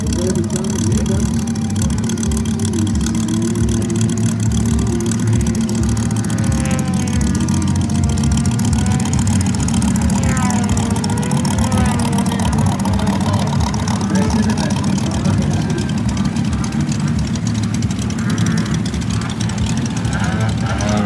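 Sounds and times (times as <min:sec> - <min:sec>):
model aircraft engine running: 0:00.0 - 0:21.0.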